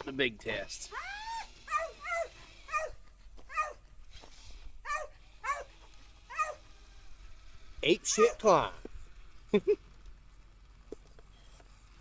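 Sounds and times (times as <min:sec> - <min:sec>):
dog yipping: 0:00.9 - 0:03.9, 0:04.8 - 0:06.7, 0:08.1 - 0:08.4.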